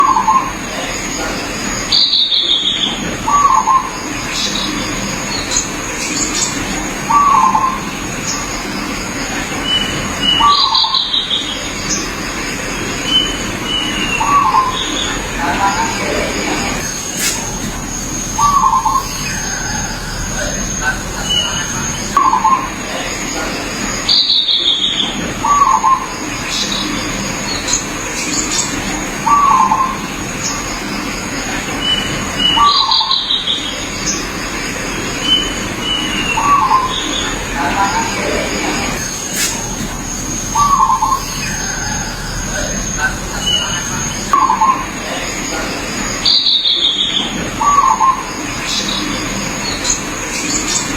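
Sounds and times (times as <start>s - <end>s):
small birds chirping: 0.0s - 50.9s
steady high-pitched hum: 0.0s - 50.9s
steady high-pitched tone: 0.0s - 50.9s
dove cooing: 13.1s - 23.6s, 35.4s - 46.4s.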